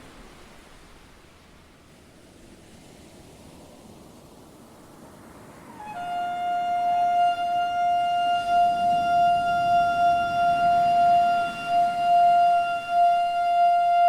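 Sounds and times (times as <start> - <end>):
faint hiss: 0.0 - 14.0
ram's-horn blast: 5.9 - 14.0.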